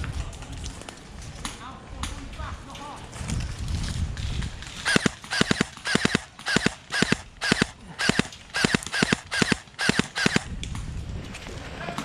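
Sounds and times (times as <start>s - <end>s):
airsoft gun firing: 4.8s - 10.6s.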